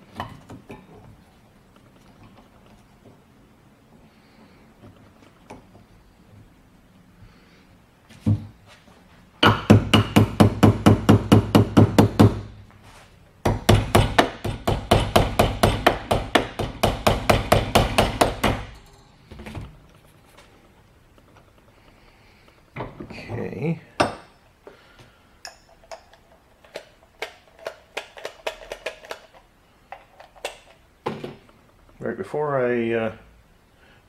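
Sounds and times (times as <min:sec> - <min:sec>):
rapid light hammering on metal: 0:09.4 - 0:12.5, 0:13.4 - 0:19.0.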